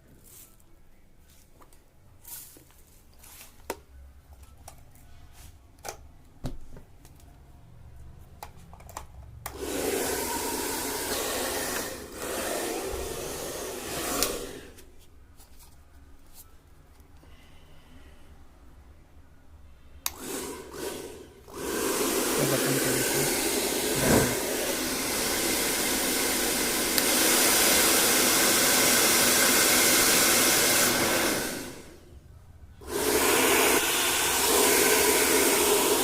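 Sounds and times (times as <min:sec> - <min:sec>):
hair dryer blowing: 0:09.5 - 0:14.8, 0:20.1 - 0:32.0, 0:32.8 - 0:36.0
hair dryer switch click: 0:14.1 - 0:14.4, 0:20.0 - 0:20.3, 0:26.9 - 0:27.2.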